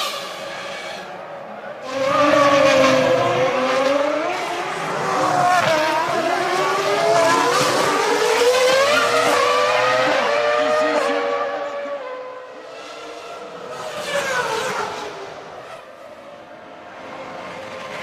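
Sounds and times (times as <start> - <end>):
race car engine revving: 1.8 - 15.8.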